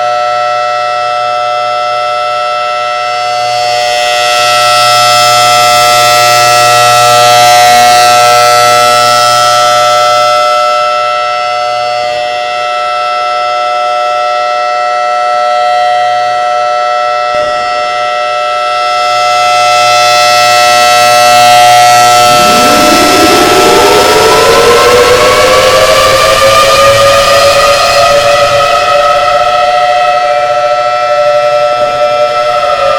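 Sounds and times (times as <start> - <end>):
siren rising tone: 19.6 - 32.9
siren alert chord: 20.0 - 32.9.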